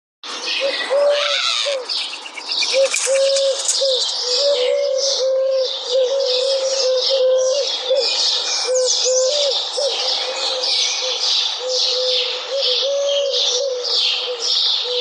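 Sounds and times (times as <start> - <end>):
high-pitched chirping chatter: 0.5 - 4.4
bird hooting or cooing: 0.6 - 2.0, 2.6 - 15.0.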